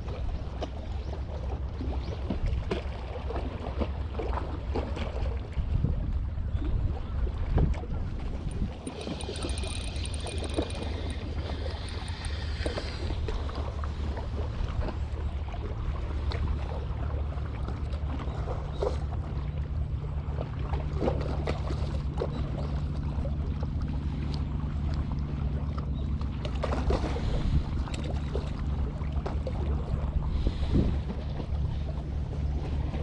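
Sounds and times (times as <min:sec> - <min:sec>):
boat engine humming: 0:00.0 - 0:33.0
light clicks and knocks: 0:08.4 - 0:12.5.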